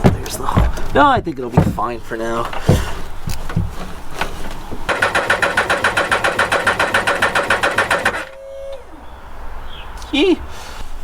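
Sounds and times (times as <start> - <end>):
knocks: 0.0 - 8.3
ratchet clicking rapidly: 4.9 - 8.4.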